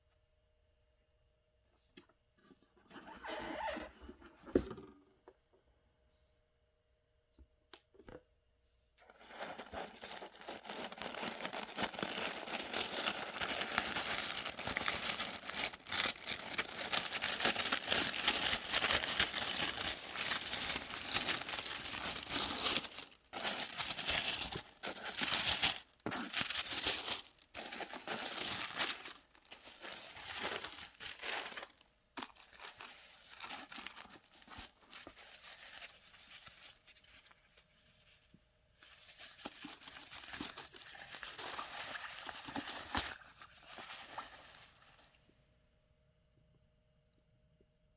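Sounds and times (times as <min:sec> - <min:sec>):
packaging crinkling and rustling: 0:09.0 - 0:37.6, 0:38.8 - 0:45.2.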